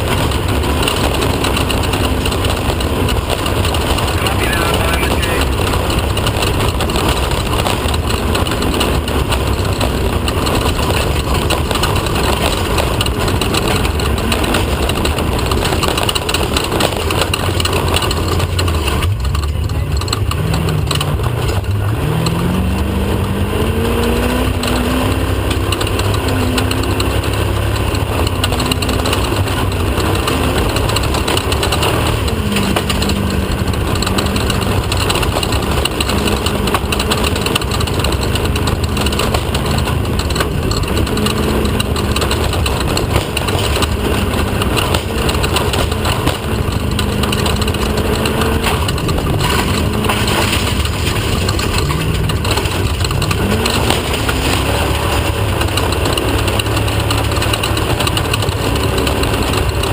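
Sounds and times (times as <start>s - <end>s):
race car engine: 0.0s - 59.9s
rattle and road noise: 0.0s - 59.9s.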